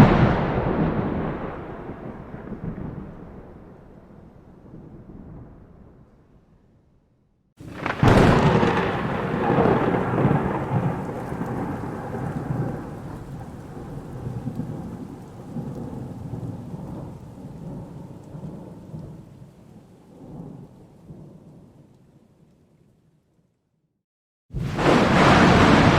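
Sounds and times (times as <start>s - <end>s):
thunder crack and rumble: 0.0s - 6.4s, 7.6s - 21.9s, 24.5s - 25.9s
rain falling: 7.6s - 23.2s, 24.5s - 25.9s.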